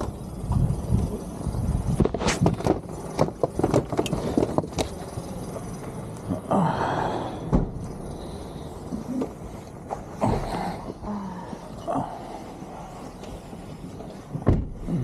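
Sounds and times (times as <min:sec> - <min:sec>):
suitcases knocking and clattering: 0:02.0 - 0:04.9, 0:14.3 - 0:15.0.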